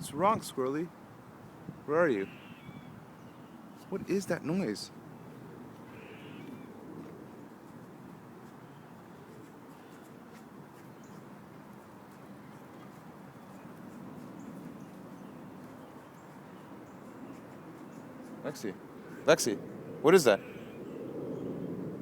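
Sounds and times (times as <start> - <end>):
squirrel squeaking: 1.9 - 4.6, 5.9 - 6.8.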